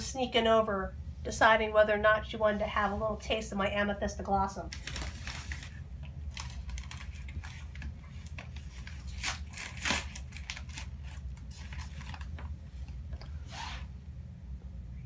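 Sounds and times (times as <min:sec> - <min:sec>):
steady low hum: 0:00.0 - 0:15.0
packing material crinkling: 0:04.7 - 0:12.6.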